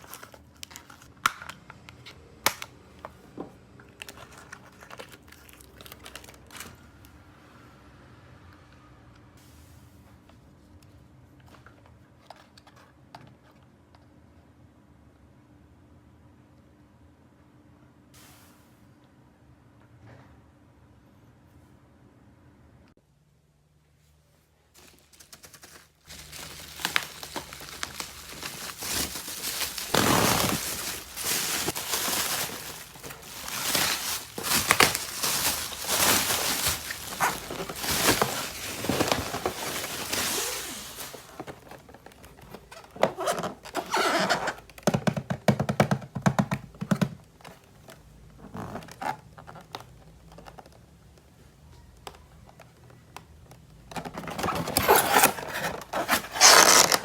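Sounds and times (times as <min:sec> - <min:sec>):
plastic and paper crinkling: 0:00.0 - 0:01.1, 0:03.8 - 0:07.0, 0:24.7 - 0:44.5, 0:53.9 - 0:57.0.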